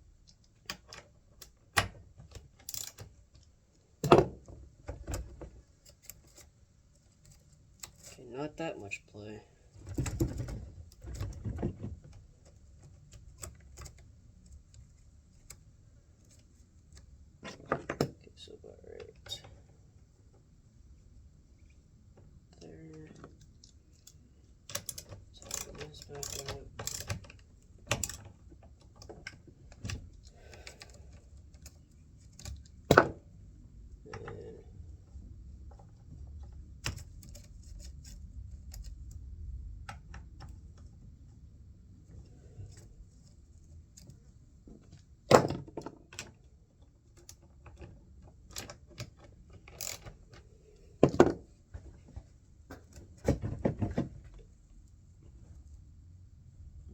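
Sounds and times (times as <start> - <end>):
chainsaw chain clicking: 25.4 - 27.2, 49.8 - 50.0.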